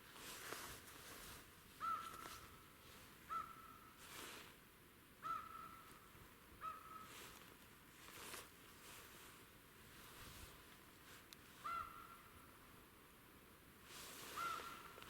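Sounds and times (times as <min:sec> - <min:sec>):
bird repeating short call: 0:14.3 - 0:15.0.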